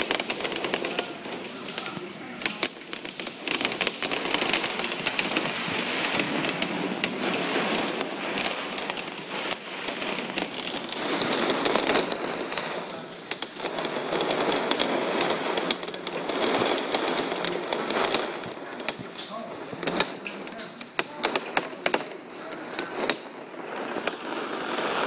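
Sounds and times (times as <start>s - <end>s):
hail pelting down: 0.0s - 25.0s.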